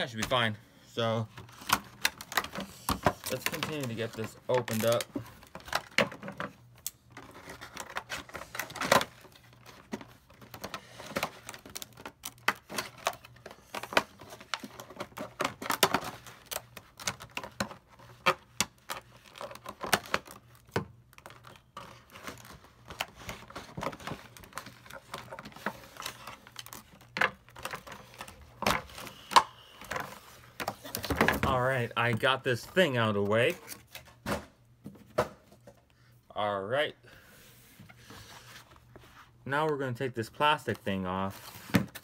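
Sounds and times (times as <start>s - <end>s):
hard plastic packaging crackling: 1.2s - 34.0s.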